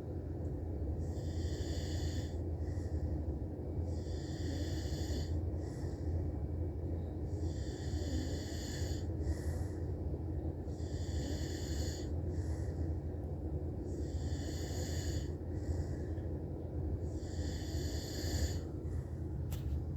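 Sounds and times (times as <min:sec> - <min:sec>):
steady low hum: 0:00.0 - 0:19.9
man snoring: 0:17.2 - 0:18.6.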